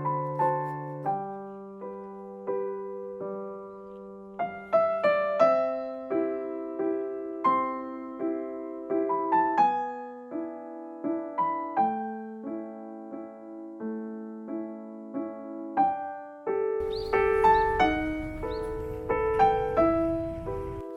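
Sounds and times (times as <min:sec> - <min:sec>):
soft solo piano: 0:00.0 - 0:20.9.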